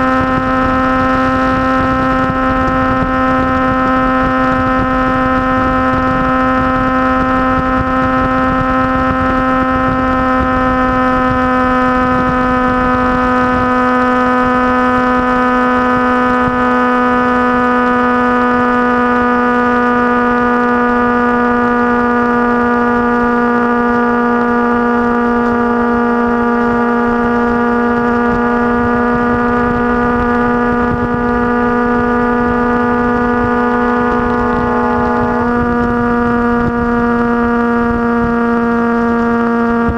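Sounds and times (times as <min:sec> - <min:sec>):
motorcycle engine cruising: 0:00.0 - 0:39.9
wind rush: 0:26.8 - 0:38.8.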